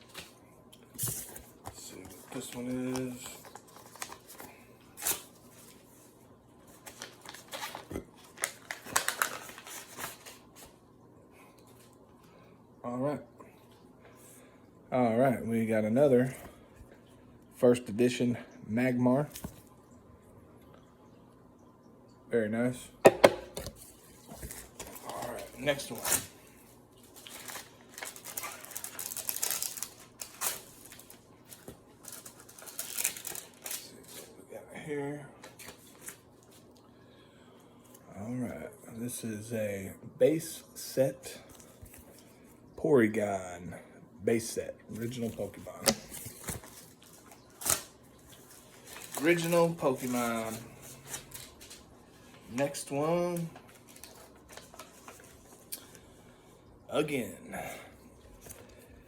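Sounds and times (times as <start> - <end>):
card packaging clicking and crinkling: 1.0 - 5.8, 6.7 - 10.8, 23.2 - 26.4, 27.0 - 34.3, 45.0 - 51.9, 52.6 - 56.0.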